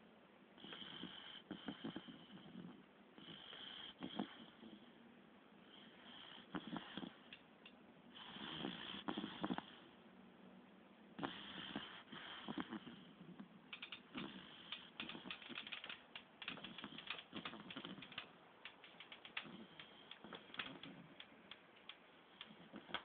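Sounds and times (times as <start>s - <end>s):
puppy snoring: 0.6s - 5.0s, 5.6s - 7.4s, 8.1s - 10.0s, 11.2s - 21.3s, 22.3s - 23.0s.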